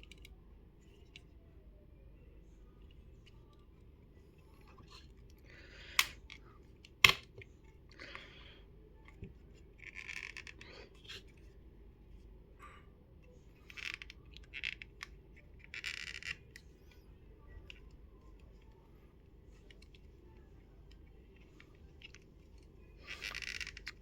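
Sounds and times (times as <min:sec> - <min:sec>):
plastic phone housing scraping: 0:23.0 - 0:24.0.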